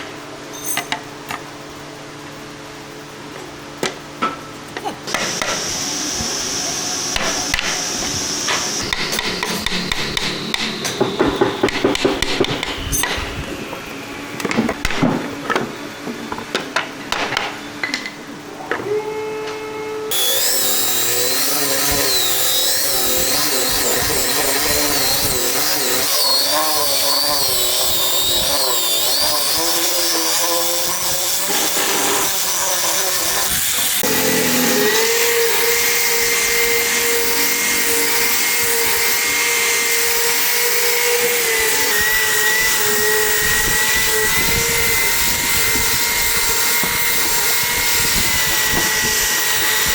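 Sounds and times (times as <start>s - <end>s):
power tool running: 5.1s - 16.4s, 20.0s - 49.9s
sharp knocks and tapping: 8.9s - 13.3s.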